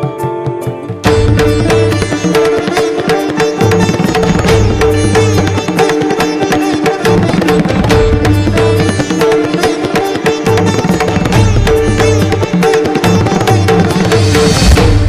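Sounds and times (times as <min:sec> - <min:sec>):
steady drum beat: 0:00.0 - 0:05.8, 0:11.4 - 0:15.0
plucked string melody: 0:00.0 - 0:15.0.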